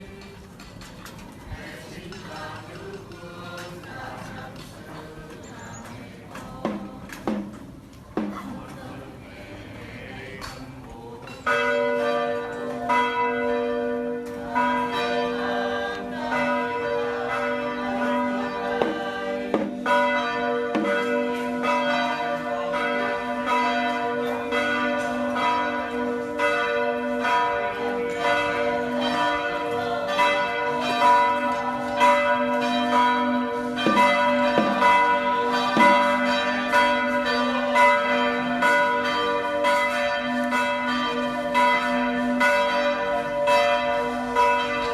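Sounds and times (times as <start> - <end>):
church bells ringing: 11.3 - 44.9.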